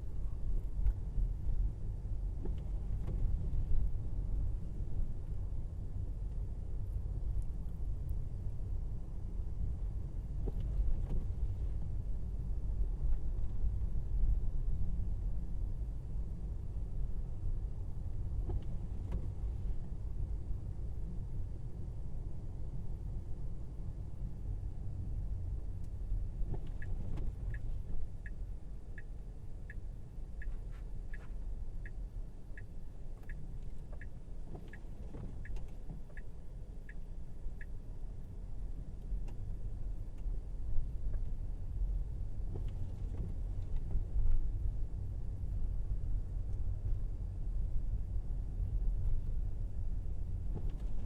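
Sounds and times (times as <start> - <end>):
tyre and road rumble in car: 0.0 - 51.0
turn signal ticking: 25.8 - 40.3.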